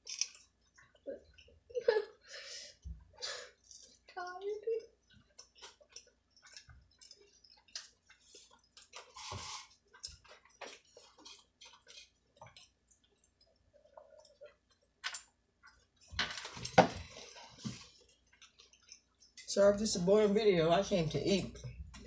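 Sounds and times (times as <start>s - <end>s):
soft clicks and taps of eating: 0.3s - 9.1s, 9.8s - 19.6s.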